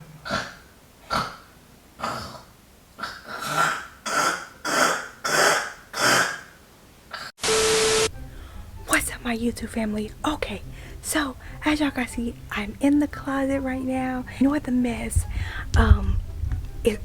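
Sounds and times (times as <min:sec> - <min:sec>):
loud hiss with hum: 0:07.4 - 0:08.8.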